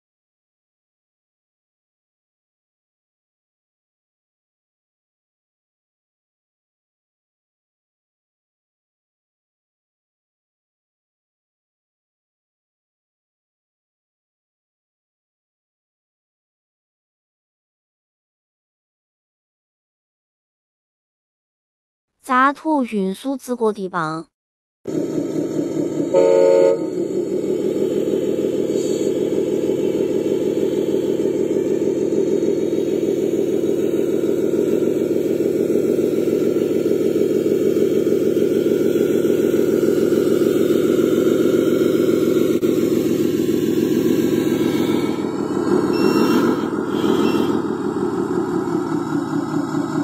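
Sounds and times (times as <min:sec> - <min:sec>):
diesel engine running: 0:24.9 - 0:50.0
truck horn toot: 0:26.1 - 0:27.0, 0:45.9 - 0:47.8.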